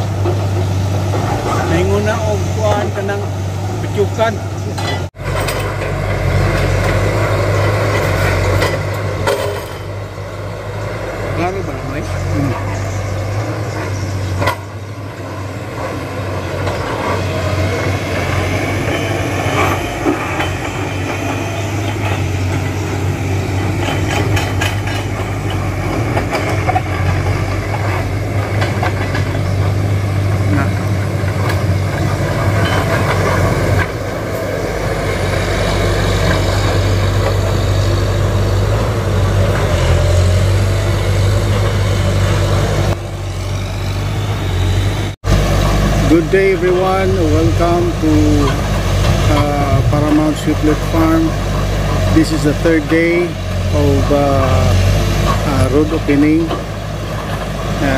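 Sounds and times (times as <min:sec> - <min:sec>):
heavy engine droning: 0:00.0 - 0:57.9
metallic clanks and rattles: 0:04.6 - 0:10.0, 0:18.4 - 0:22.8, 0:23.5 - 0:34.4.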